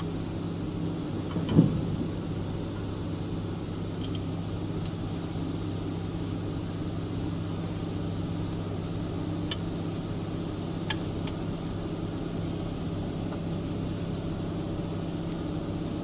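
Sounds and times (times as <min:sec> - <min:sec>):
faint clicks of metal parts: 0:10.8 - 0:11.8.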